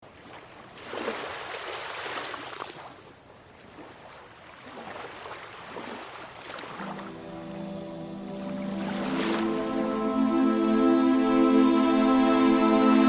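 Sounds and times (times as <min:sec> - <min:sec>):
ocean surf: 0:06.8 - 0:13.0.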